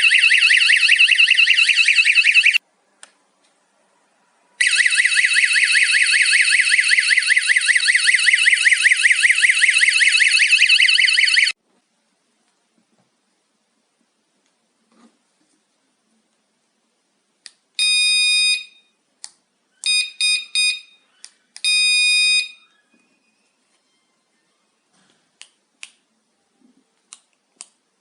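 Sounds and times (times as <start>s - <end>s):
alarm beeping: 0.0s - 2.6s, 4.6s - 11.6s.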